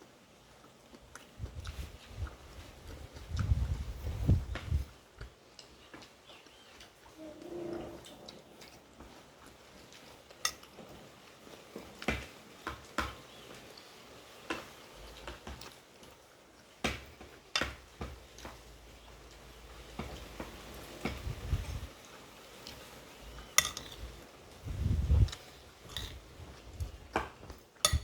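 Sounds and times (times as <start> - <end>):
fork clicking against a plate: 23.6 - 24.0.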